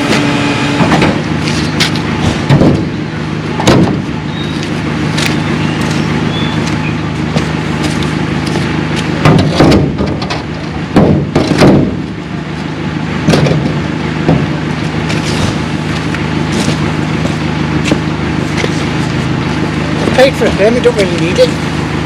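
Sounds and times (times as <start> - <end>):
heavy clunks and clatters: 0.0 - 2.9, 3.6 - 4.1, 7.3 - 12.1, 13.2 - 18.9
vehicle engine idling: 0.0 - 22.0.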